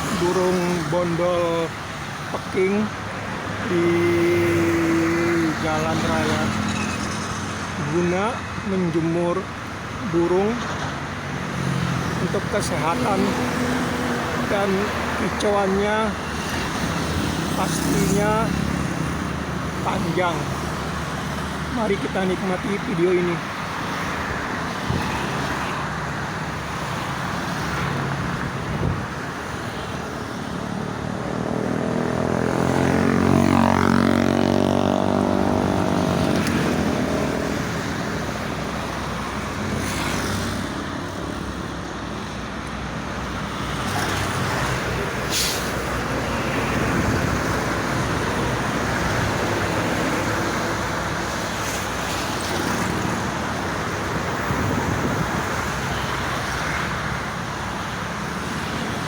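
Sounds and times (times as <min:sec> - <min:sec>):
road traffic: 0:00.0 - 0:59.0
vehicle passing close: 0:30.5 - 0:40.7.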